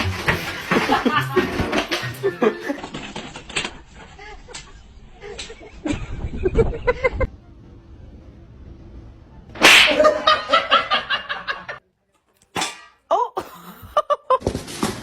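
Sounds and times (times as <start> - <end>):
loud sharp smack: 9.6 - 10.0.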